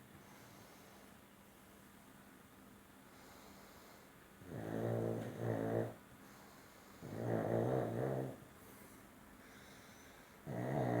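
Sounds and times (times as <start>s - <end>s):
dog snoring: 4.4s - 6.0s, 7.0s - 8.5s, 10.4s - 11.0s.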